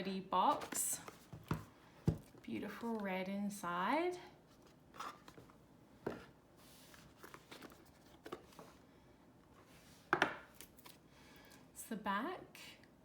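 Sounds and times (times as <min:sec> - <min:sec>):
cards tapping and rustling: 0:00.5 - 0:02.4.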